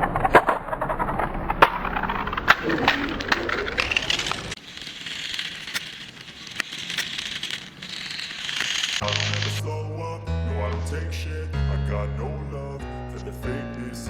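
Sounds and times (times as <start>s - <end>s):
crackling noise with clicks: 0.0s - 9.6s.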